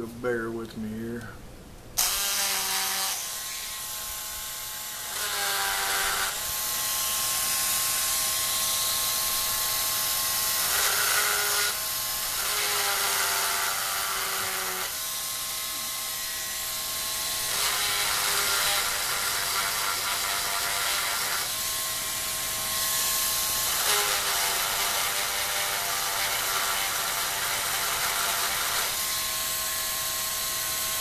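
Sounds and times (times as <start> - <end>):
rotary tool sanding whine: 2.0 - 31.0.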